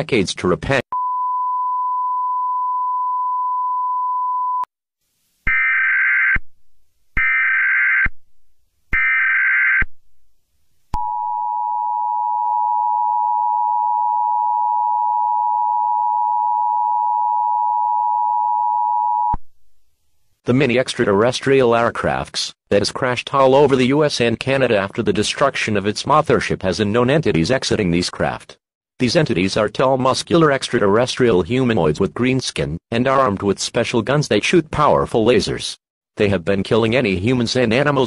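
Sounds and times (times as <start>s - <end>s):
steady single beep: 0.9s - 4.7s.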